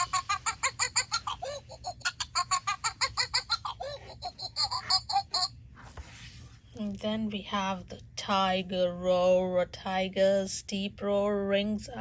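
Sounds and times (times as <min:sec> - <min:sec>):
recorded monkey chattering: 0:00.0 - 0:05.5.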